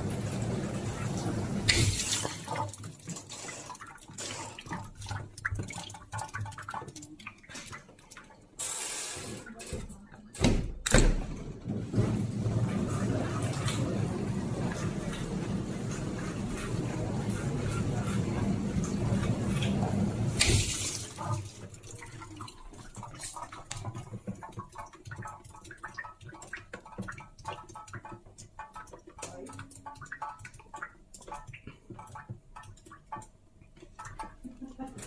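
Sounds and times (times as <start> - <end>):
dishwasher humming: 0.0 - 25.8
water dripping and splashing: 0.0 - 35.0.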